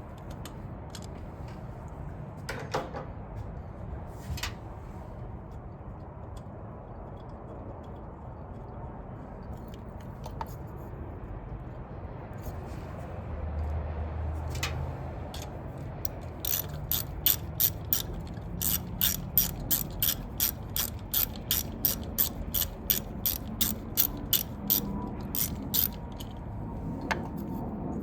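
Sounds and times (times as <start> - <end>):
ratchet wrench clicking: 15.4 - 26.4.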